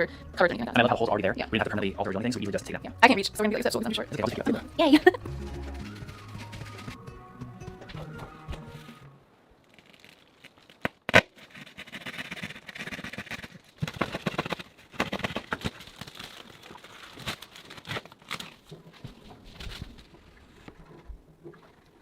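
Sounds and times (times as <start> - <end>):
rustling and crinkling: 4.2 - 7.0, 9.6 - 21.8.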